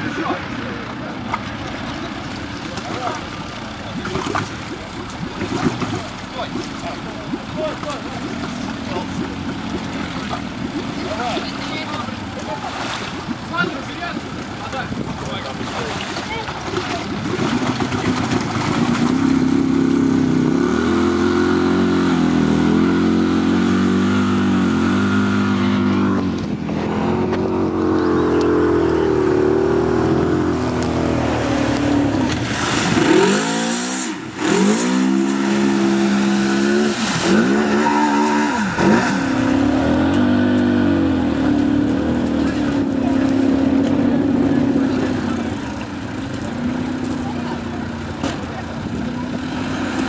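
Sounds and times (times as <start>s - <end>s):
quad bike engine revving: 16.3s - 50.0s.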